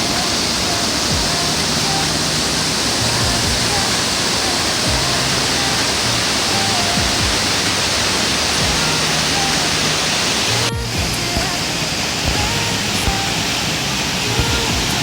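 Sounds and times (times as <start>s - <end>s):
stream rapids rushing: 0.0s - 15.0s.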